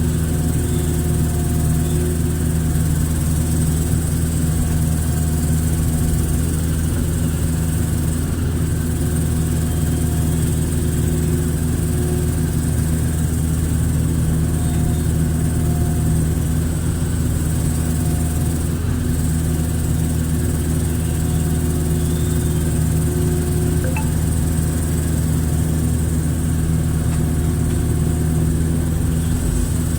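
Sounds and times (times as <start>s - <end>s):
excavator diesel engine running: 0.0s - 29.9s
faint high whine: 23.7s - 24.6s.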